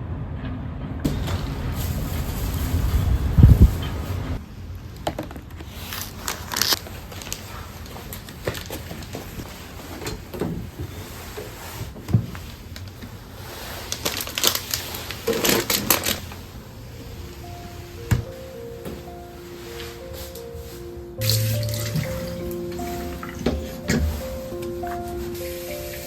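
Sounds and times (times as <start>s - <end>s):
small objects clicking and crinkling: 5.2s - 9.4s.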